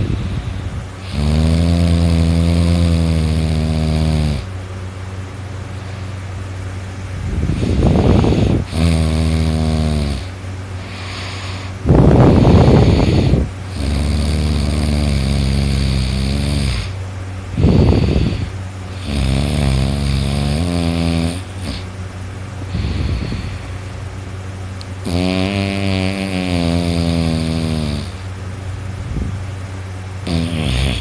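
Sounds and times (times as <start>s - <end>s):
person snoring loudly: 0.0s - 4.5s, 7.5s - 17.0s, 17.6s - 21.9s, 25.0s - 28.2s, 30.2s - 31.0s
low steady hum: 0.0s - 31.0s.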